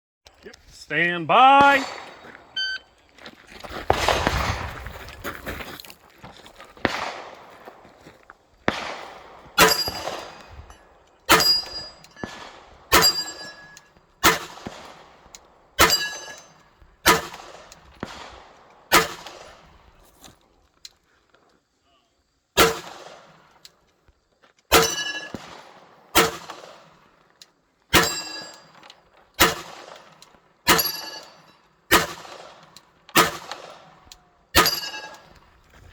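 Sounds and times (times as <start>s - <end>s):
pistol shots: 1.4s - 2.6s, 3.7s - 5.1s, 6.8s - 19.7s, 22.6s - 23.4s, 24.7s - 27.1s, 27.9s - 35.4s
steel targets clanging: 9.6s - 14.4s, 15.8s - 17.3s, 24.7s - 25.4s, 27.9s - 29.6s, 30.7s - 32.1s, 34.6s - 35.4s.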